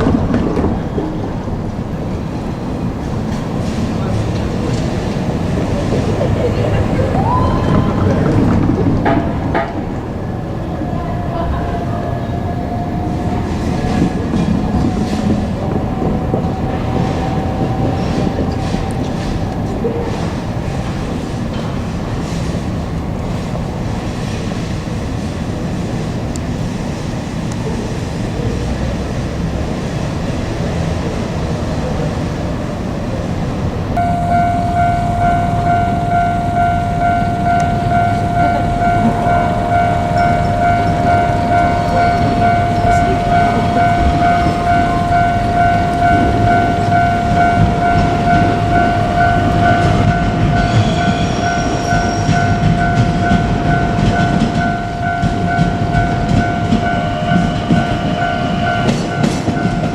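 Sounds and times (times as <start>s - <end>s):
electric train rumble: 0.0s - 59.9s
level crossing warning bell: 2.0s - 9.2s, 10.4s - 22.6s, 34.0s - 59.9s.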